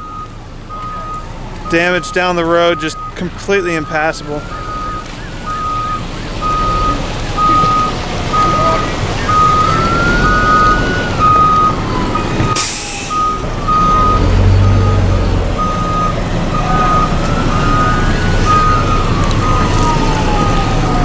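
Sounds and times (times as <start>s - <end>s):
heavy engine rumbling: 0.0s - 21.0s
siren wailing: 0.0s - 21.0s
truck backup alarm beeping: 0.0s - 21.0s
air brake hiss: 12.6s - 13.2s.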